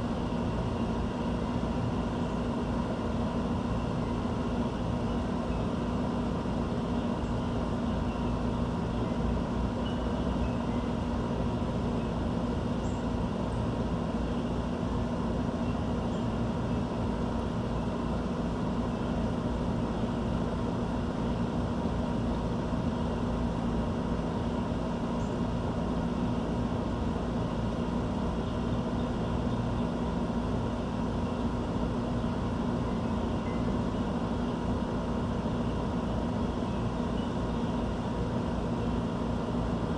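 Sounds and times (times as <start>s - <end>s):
steady mechanical rumble: 0.0s - 39.9s
faint bird chirps: 8.0s - 11.0s, 12.8s - 13.1s, 36.6s - 37.8s.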